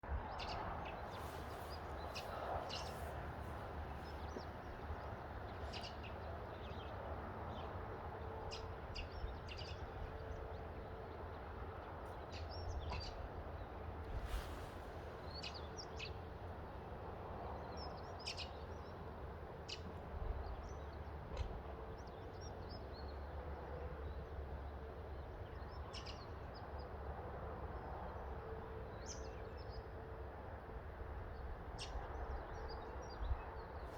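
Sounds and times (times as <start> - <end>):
wind rumble on microphone: 0.0 - 18.1, 31.2 - 33.9
birds chirping: 0.4 - 7.7.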